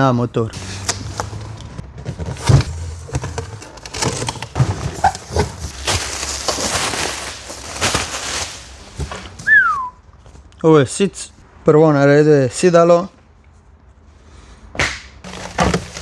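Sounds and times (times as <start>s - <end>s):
cardboard packaging rustling and tearing: 0.6s - 1.6s, 2.3s - 9.5s, 15.3s - 16.0s.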